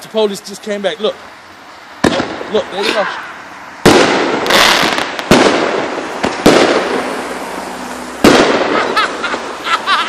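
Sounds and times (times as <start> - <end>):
firework bangs with rumble: 2.0 - 2.5, 3.8 - 7.2, 8.2 - 9.5.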